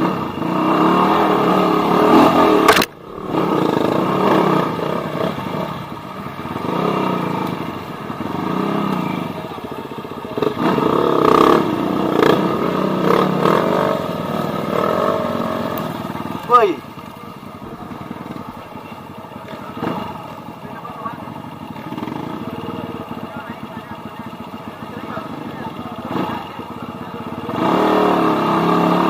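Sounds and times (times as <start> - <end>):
dirt bike engines revving: 0.0 - 29.0
sharp crack: 2.2 - 3.2.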